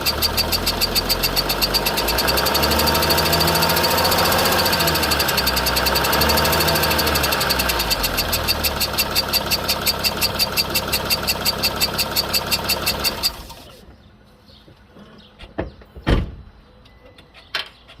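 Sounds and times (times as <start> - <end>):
rhythmic squeak from engine: 0.0 - 13.8
van engine running: 0.0 - 14.0.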